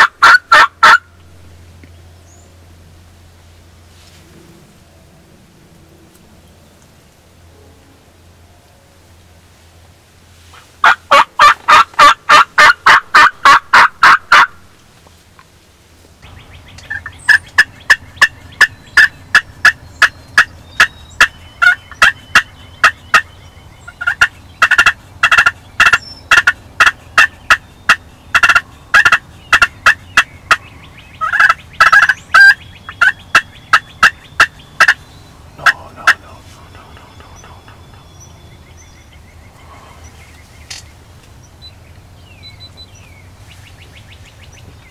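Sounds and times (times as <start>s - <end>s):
turkey yelping: 0.0s - 1.1s, 10.8s - 14.6s, 16.8s - 35.0s, 35.6s - 38.0s.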